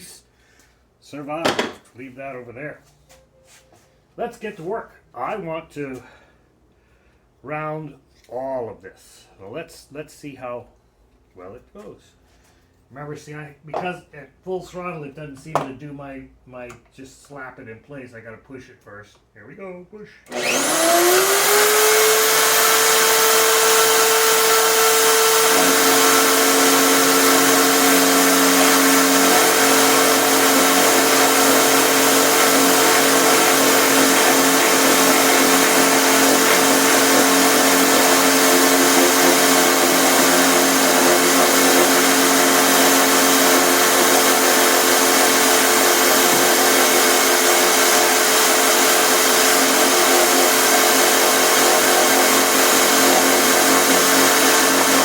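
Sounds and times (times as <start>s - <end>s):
electric drill router whining: 20.3s - 55.0s
router bit cutting wood: 20.3s - 55.0s.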